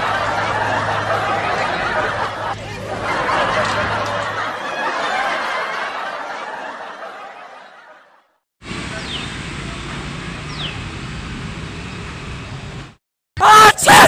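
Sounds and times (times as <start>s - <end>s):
people laughing and chattering: 0.0s - 8.2s
noisy background: 8.6s - 14.0s.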